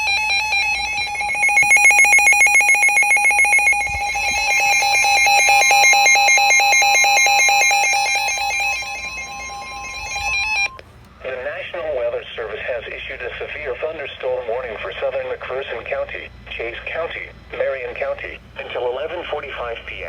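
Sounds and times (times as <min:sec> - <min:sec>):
higher electronic tone: 0:00.0 - 0:10.8
piercing two-tone alarm: 0:00.0 - 0:10.8.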